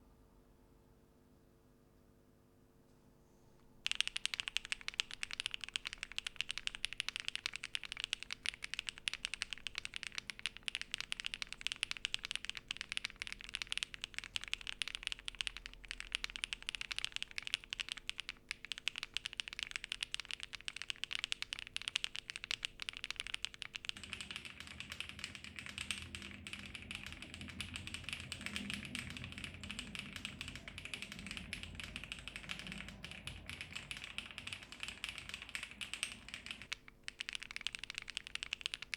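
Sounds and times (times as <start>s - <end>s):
fast typing on mechanical keyboard: 3.8s - 38.9s.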